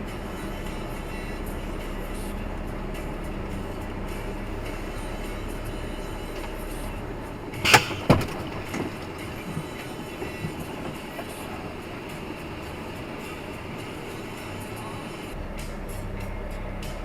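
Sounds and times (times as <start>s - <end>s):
heavy vehicle engine running: 0.0s - 17.0s
sharp loud knocks: 7.6s - 10.6s.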